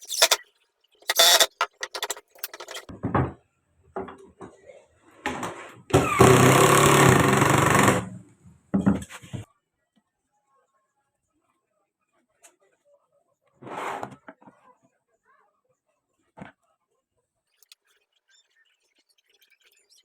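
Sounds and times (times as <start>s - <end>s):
short bursts of noise: 0.0s - 0.4s, 1.0s - 2.8s
table saw motor running: 0.0s - 0.4s, 1.0s - 2.8s.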